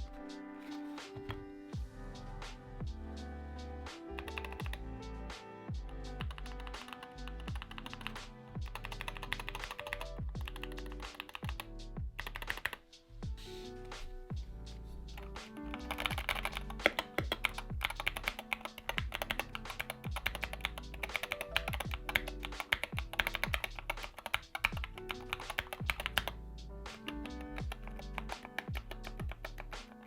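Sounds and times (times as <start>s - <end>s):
background music with bass beat: 0.0s - 30.0s
fast keyboard typing: 4.2s - 4.8s, 5.9s - 12.8s, 15.2s - 26.4s, 27.0s - 30.0s.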